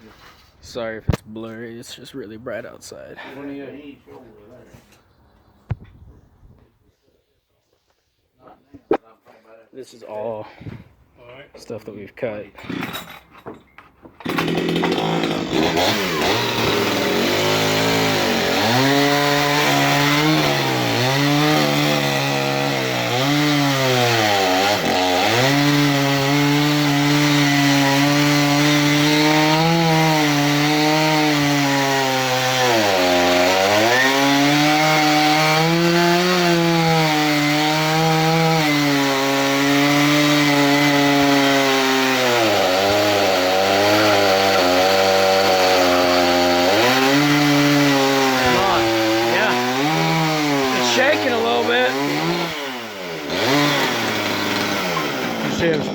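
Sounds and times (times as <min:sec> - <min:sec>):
band sawmill cutting log: 0:14.2 - 0:55.9.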